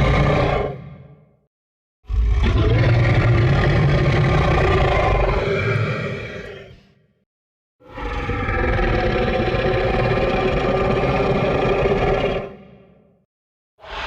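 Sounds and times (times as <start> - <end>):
monster roar: 0.0 - 1.3, 2.1 - 6.9, 7.8 - 13.0.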